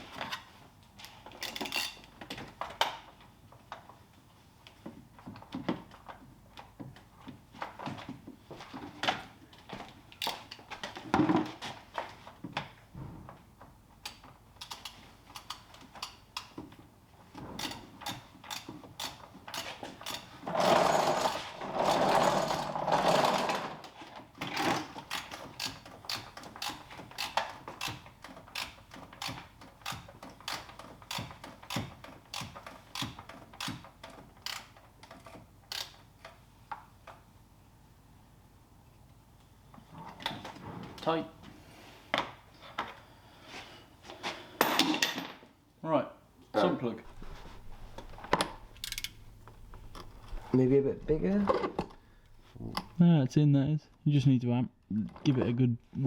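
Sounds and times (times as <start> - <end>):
hand ratchet clicking: 14.1 - 16.6, 17.6 - 23.6, 24.6 - 36.4, 48.0 - 50.4.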